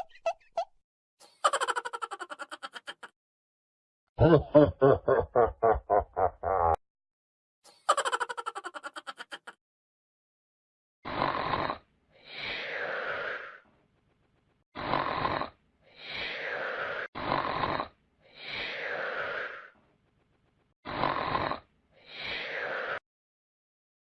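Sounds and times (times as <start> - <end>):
comic snoring: 11.0 - 13.6, 14.8 - 19.8, 20.8 - 23.0.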